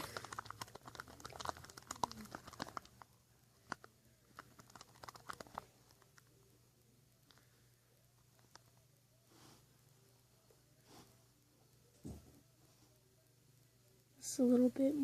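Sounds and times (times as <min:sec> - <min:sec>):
sticky slime clicks and scrapes: 0:00.0 - 0:03.1.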